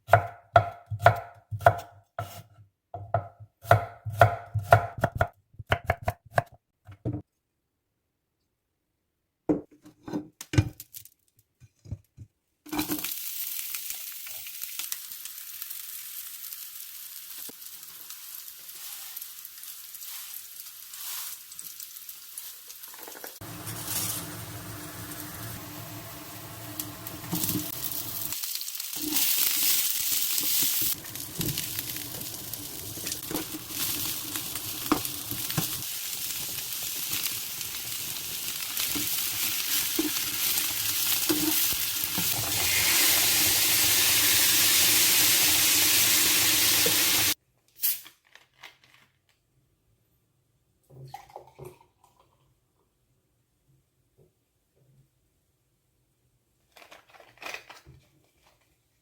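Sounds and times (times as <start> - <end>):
knife chopping on cutting board: 0.1 - 2.4, 3.0 - 6.6
food sizzling in frying pan: 12.7 - 47.4.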